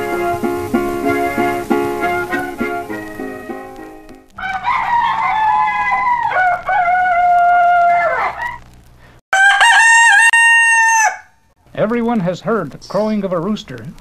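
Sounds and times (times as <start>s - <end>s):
guitar music: 0.0s - 4.4s
rooster crowing: 4.4s - 8.6s, 9.3s - 11.5s.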